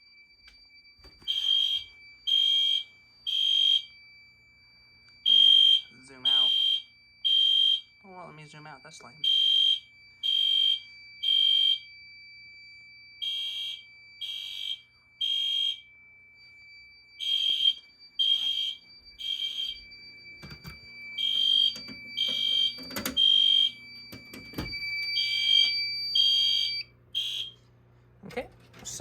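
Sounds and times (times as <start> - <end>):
fire alarm beeping: 0.0 - 27.8
steady high tone: 1.0 - 6.9, 7.7 - 27.6.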